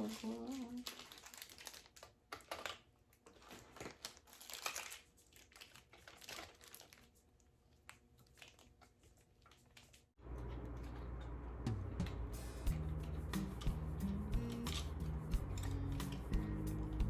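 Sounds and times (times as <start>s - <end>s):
packaging crinkling and rustling: 0.0s - 10.1s.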